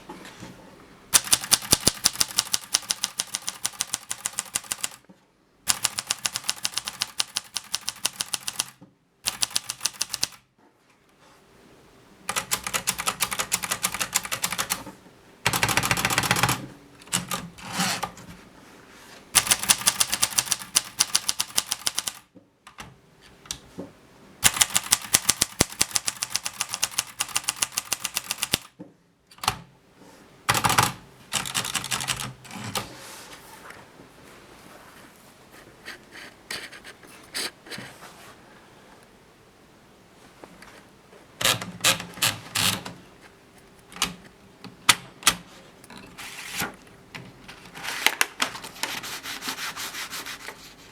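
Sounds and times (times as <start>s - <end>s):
typewriter keys striking: 1.2s - 5.0s, 5.7s - 10.4s, 12.3s - 14.9s, 15.5s - 17.4s, 19.4s - 22.2s, 24.4s - 28.7s, 30.5s - 32.4s.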